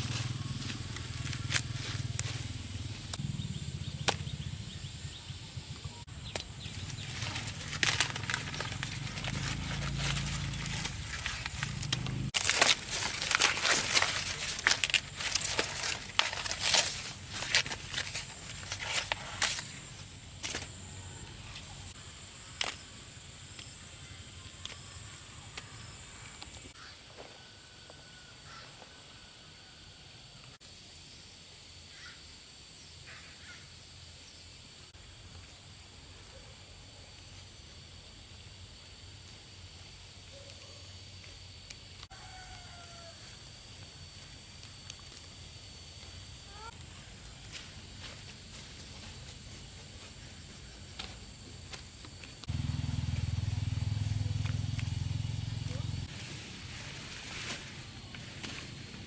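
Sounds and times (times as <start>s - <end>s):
dry leaves rustling: 0.0s - 3.3s, 6.0s - 22.8s, 42.2s - 59.0s
stalks snapping: 4.0s - 4.3s, 6.3s - 19.8s, 22.6s - 22.8s.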